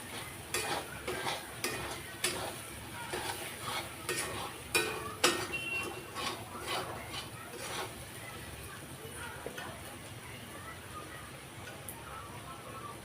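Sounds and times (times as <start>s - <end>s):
spoon scraping a pan: 0.0s - 8.2s
faint frying sizzle: 0.0s - 13.0s.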